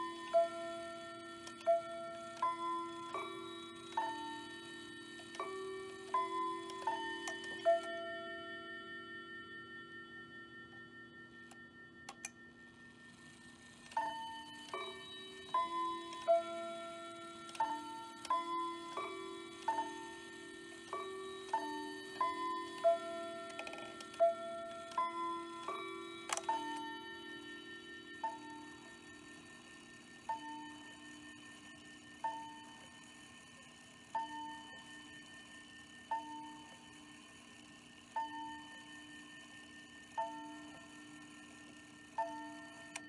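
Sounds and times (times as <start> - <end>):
clock chimes melody: 0.0 - 29.6
clock click: 5.2 - 8.0, 13.8 - 26.9.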